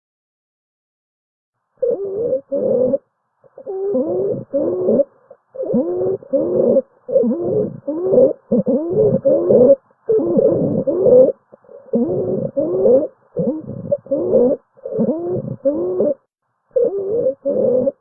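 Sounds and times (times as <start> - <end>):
lung wheezes: 3.6 - 16.2.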